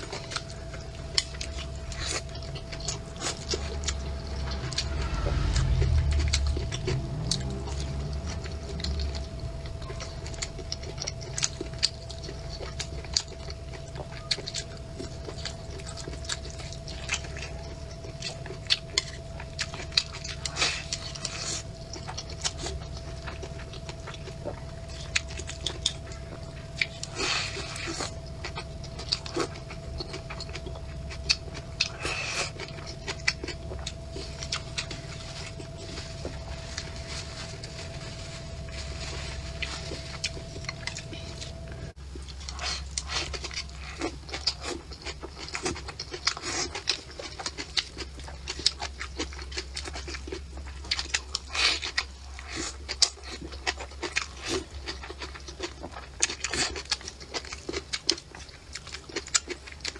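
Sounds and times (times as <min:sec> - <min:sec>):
faint steady tone: 0:00.0 - 0:44.1
person chewing and smacking: 0:00.0 - 0:59.9
steady low hum: 0:00.0 - 0:59.9.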